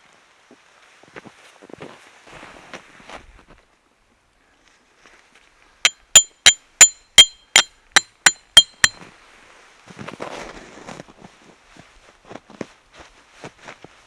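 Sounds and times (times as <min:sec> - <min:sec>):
hammer striking metal tent peg: 0:05.9 - 0:09.0.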